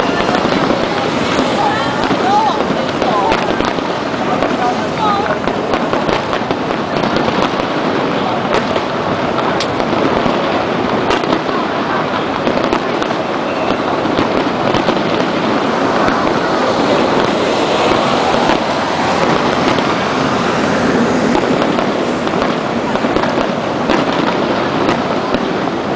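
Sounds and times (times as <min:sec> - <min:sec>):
fireworks popping and crackling: 0:00.0 - 0:25.9.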